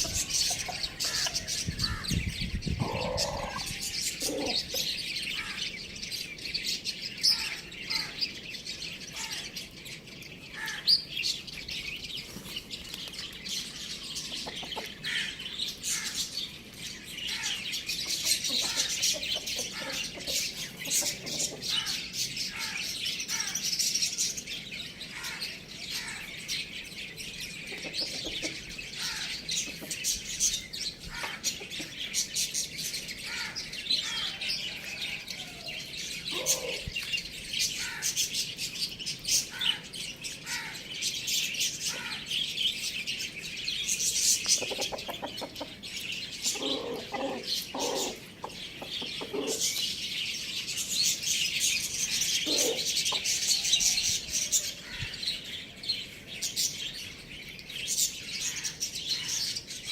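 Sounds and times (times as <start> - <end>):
lower bird calls: 0.0 - 5.6
small birds chirping: 0.0 - 59.9.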